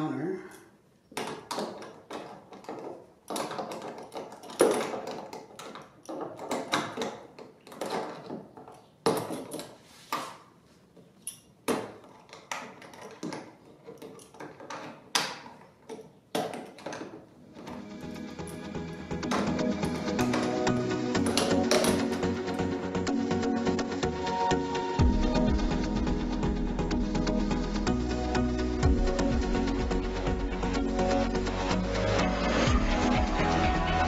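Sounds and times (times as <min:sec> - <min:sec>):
tools clicking and scraping hardware: 0:11.0 - 0:23.1.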